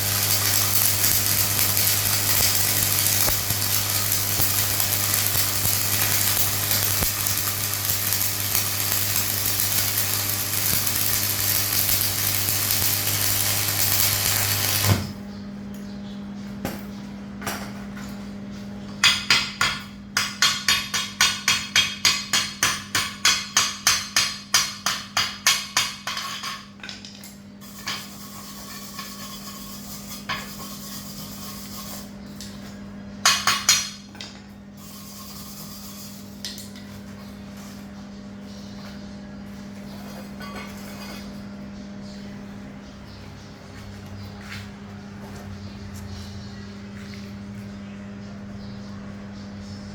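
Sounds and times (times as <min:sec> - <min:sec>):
welding arc hissing and crackling: 0:00.0 - 0:15.2, 0:34.8 - 0:36.5
welding machine hum: 0:00.0 - 0:15.2, 0:34.8 - 0:37.9
hammer striking metal: 0:19.0 - 0:26.7.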